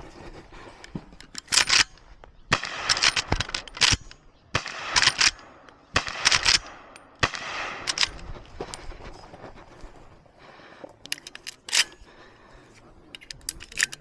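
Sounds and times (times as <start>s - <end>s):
rifle shots ringing: 1.4s - 8.4s.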